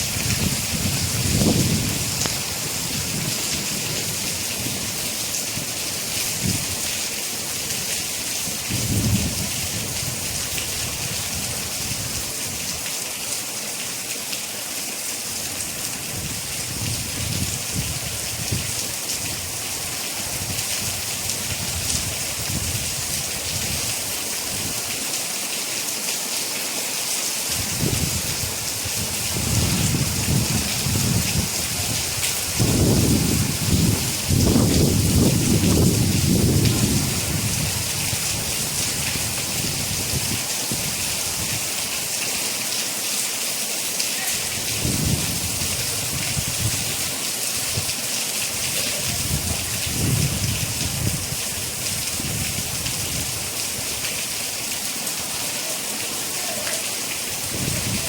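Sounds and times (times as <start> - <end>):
steady rain falling: 0.0 - 58.0
thunder rumbling: 27.6 - 40.3.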